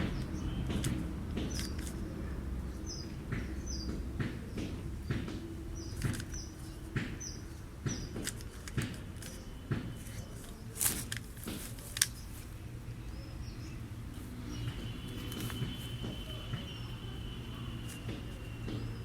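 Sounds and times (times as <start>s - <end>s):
puzzle cube plastic clicks: 10.8s - 12.3s.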